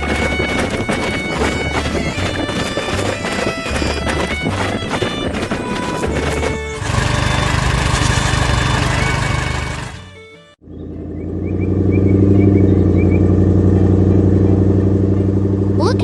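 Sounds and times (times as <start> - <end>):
cartoon engine hum: 5.6 - 16.0.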